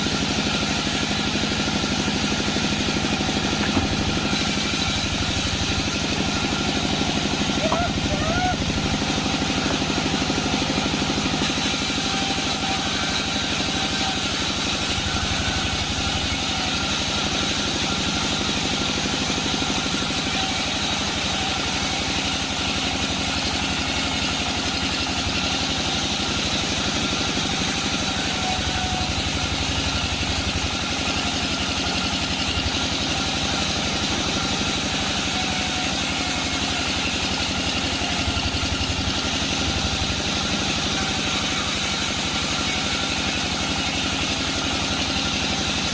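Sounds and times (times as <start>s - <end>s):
bandsaw machinery running: 0.0s - 45.9s.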